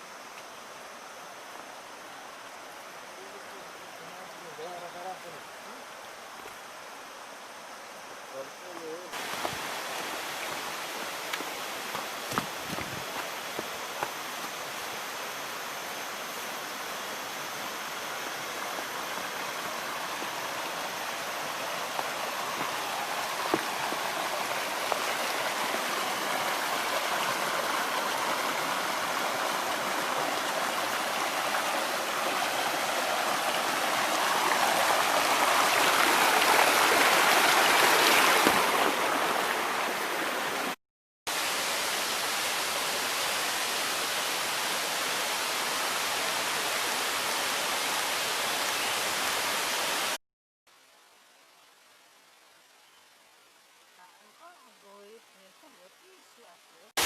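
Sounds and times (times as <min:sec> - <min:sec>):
waterfall rushing: 0:09.1 - 0:50.2.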